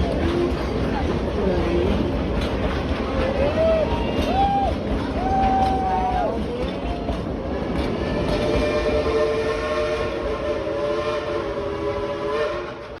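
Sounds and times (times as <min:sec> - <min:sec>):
train whistle blast: 0:08.1 - 0:13.0.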